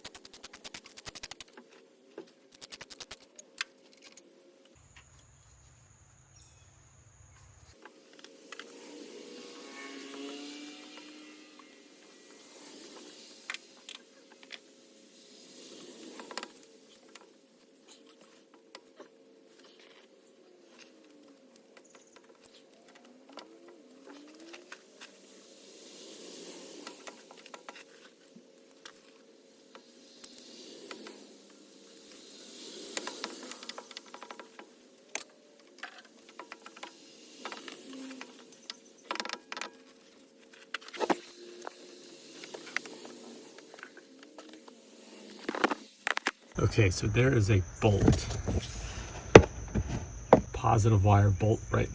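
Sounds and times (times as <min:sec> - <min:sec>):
faint steady hum: 0:46.6 - 0:51.9.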